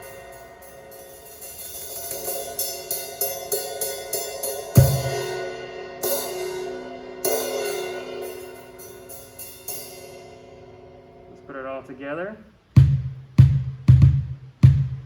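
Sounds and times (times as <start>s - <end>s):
cymbal crashes ringing: 0.0s - 11.4s
bass drum thump: 4.8s - 5.2s, 12.8s - 15.0s.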